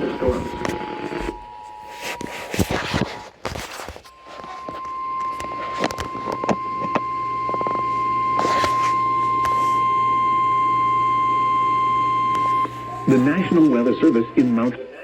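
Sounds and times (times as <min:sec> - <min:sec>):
low hum: 0:04.1 - 0:14.8.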